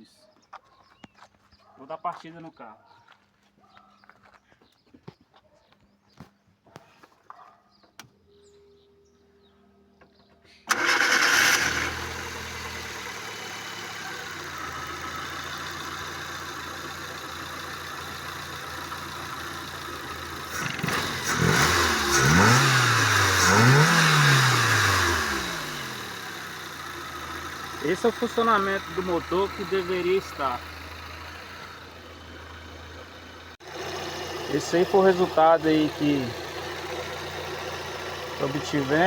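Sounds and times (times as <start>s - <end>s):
car engine revving: 10.7s - 39.0s
car engine starting and idling: 10.7s - 39.0s.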